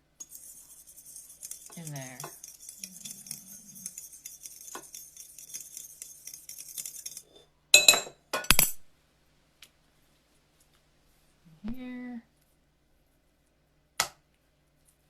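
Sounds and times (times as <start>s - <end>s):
dishes clinking: 1.4s - 8.8s.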